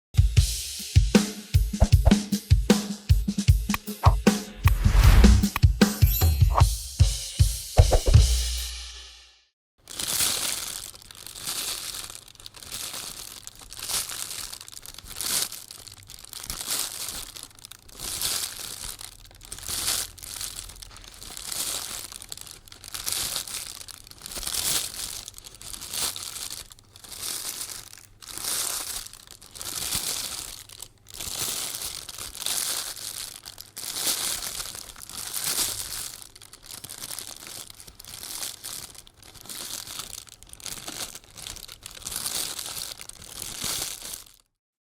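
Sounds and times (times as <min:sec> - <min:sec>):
footsteps on dry leaves: 0:04.8 - 0:05.4, 0:16.6 - 0:23.5.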